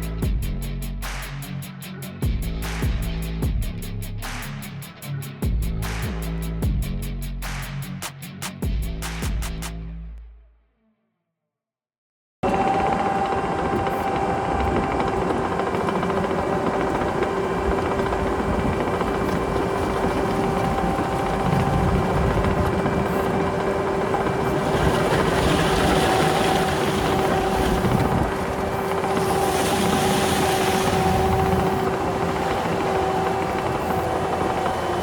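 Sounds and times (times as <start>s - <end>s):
diesel engine running under load: 12.4s - 35.0s.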